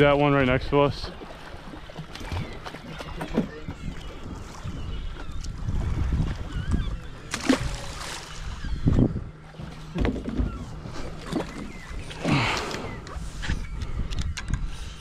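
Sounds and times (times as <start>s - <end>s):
wind rumble on microphone: 3.2s - 11.8s.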